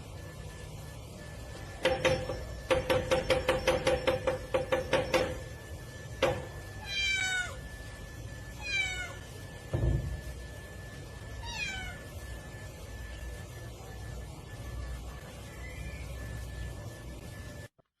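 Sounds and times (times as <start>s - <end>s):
sharp knocks: 1.8s - 5.5s
cat meowing: 6.8s - 7.6s, 8.6s - 9.3s, 11.4s - 12.1s.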